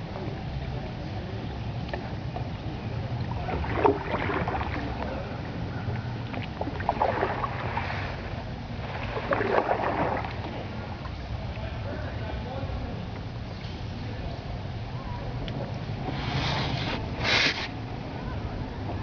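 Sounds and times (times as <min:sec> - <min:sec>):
paddle strokes splashing water: 0:00.2 - 0:12.2, 0:15.5 - 0:17.9.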